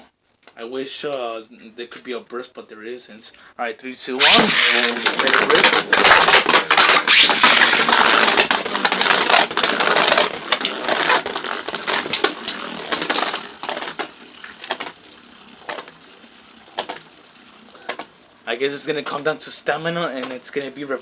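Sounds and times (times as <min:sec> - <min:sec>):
spinning tops clashing: 0:04.2 - 0:09.8
spinning tops clicking: 0:04.2 - 0:14.0.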